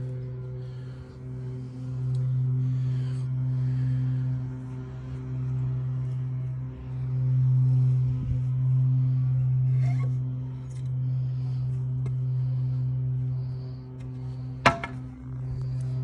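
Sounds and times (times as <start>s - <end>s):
low droning music tone: 0.0s - 16.0s.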